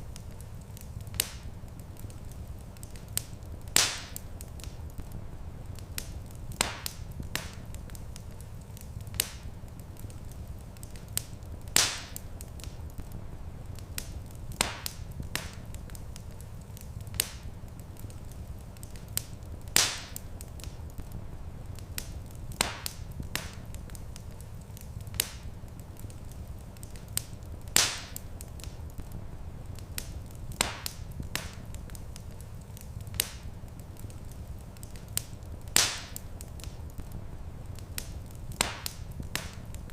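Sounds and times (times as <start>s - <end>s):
low fire rumble: 0.0s - 39.9s
wood fire crackling and popping: 0.0s - 39.9s.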